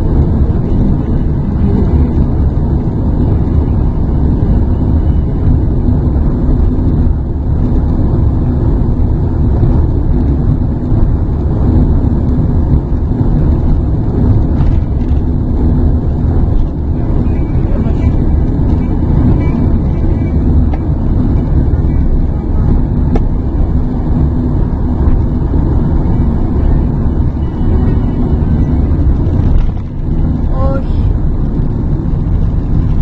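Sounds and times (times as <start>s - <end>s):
car engine and road noise: 0.0s - 33.0s.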